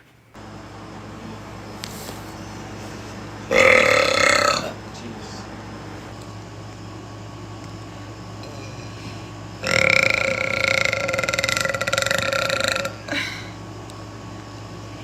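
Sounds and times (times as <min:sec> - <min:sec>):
woman burping loudly: 0:03.5 - 0:04.8, 0:09.6 - 0:13.6.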